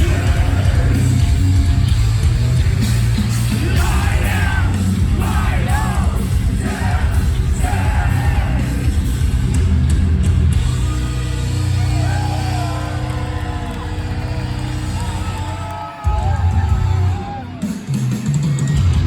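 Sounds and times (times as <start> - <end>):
yelled and sung vocals: 0.0 - 1.8, 3.2 - 9.3
pounding drums: 0.0 - 10.9
live metal band playing: 0.0 - 19.0.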